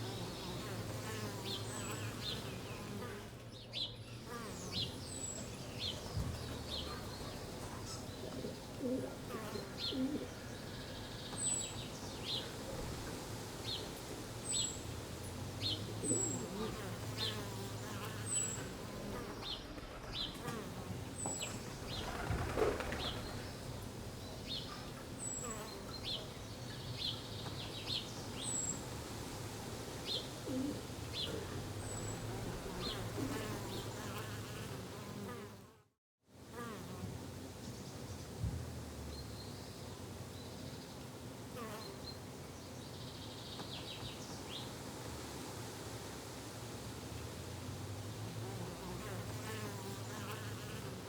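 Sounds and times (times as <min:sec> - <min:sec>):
buzzing insect: 0:48.5 - 0:51.0.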